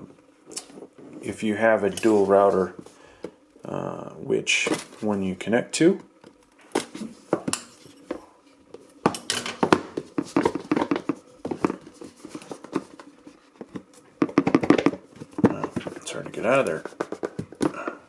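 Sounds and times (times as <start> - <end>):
cardboard box and packaging handled: 4.6 - 5.1, 8.9 - 18.0.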